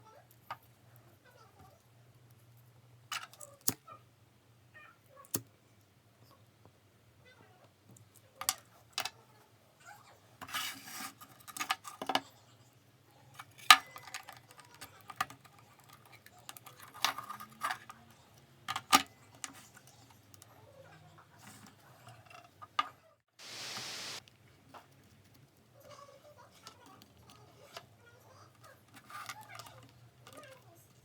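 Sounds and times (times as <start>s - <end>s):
short hiss: 23.4s - 24.2s.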